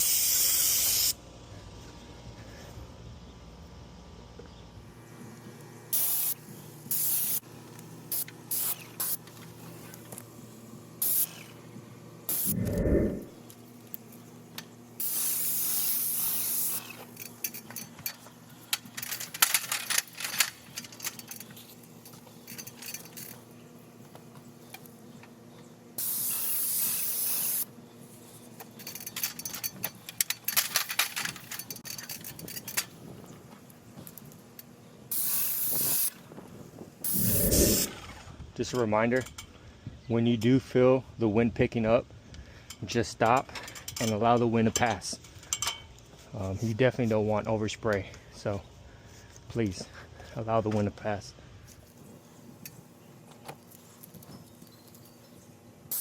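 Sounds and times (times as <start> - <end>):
spray paint hissing: 0.0 - 1.1, 6.0 - 7.4, 8.1 - 9.2, 11.0 - 11.4, 12.3 - 13.2, 15.0 - 17.0, 26.0 - 27.7, 35.1 - 36.1, 37.1 - 37.9.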